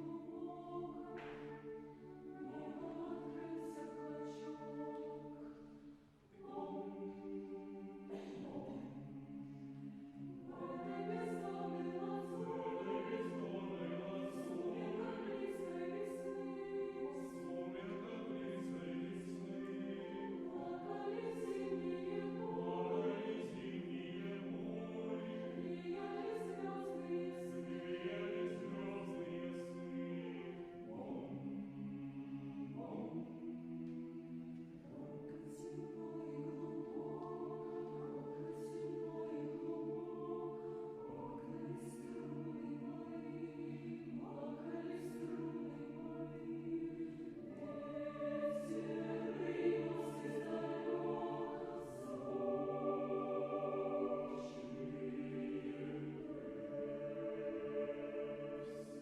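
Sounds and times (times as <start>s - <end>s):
choir singing chords: 0.0s - 59.0s.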